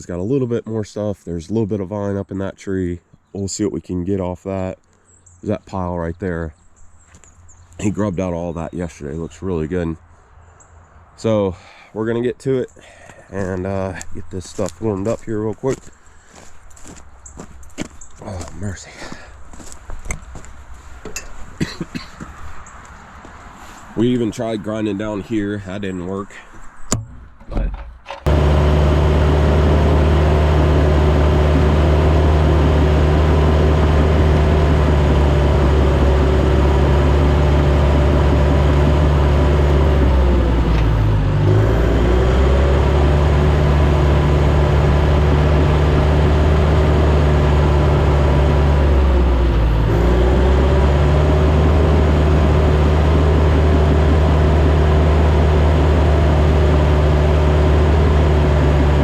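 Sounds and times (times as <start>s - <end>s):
diesel engine at high revs: 28.3s - 59.0s.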